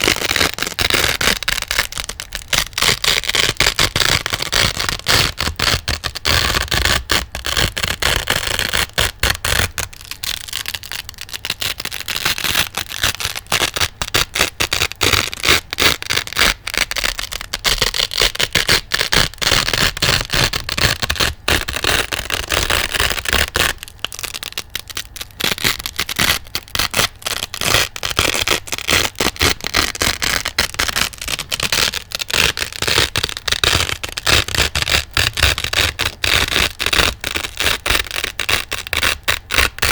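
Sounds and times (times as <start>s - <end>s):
velcro being pulled apart: 0.0s - 39.9s.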